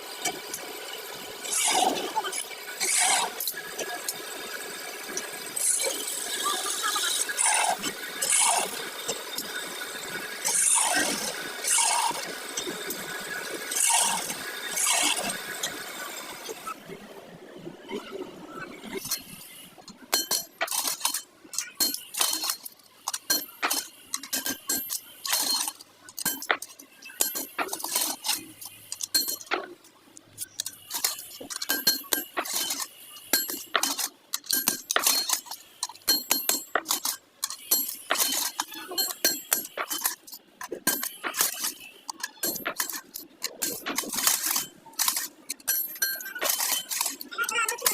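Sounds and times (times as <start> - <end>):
metal tools clinking: 20.1 - 29.7, 30.4 - 47.9.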